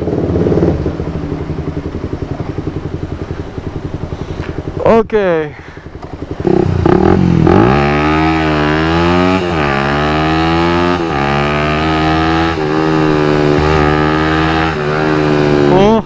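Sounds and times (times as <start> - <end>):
motorcycle engine accelerating: 0.0 - 5.1, 5.8 - 16.0.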